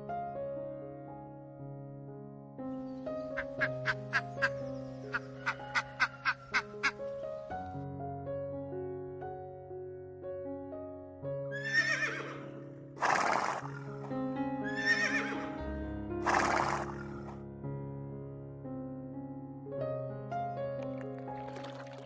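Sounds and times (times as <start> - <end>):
piano-like background music: 0.0 - 22.0
wavering high animal call: 3.4 - 7.0, 11.6 - 14.1, 14.7 - 15.5, 16.2 - 17.3.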